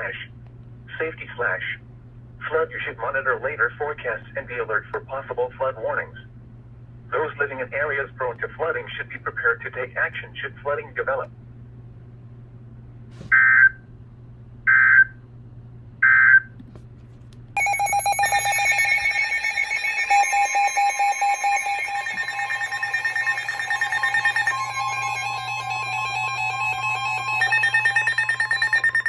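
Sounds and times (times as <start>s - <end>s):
many-toned attention alarm: 17.6s - 29.0s
warbling data tone bursts: 17.6s - 29.0s.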